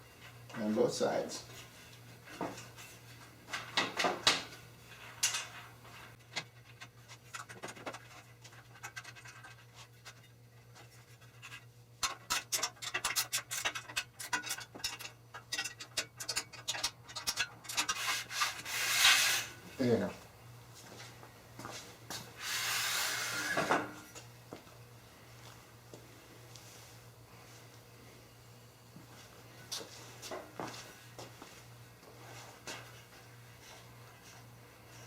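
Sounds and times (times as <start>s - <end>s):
metal hardware scraping and knocking: 11.2s - 18.7s
faint hum: 13.7s - 35.0s.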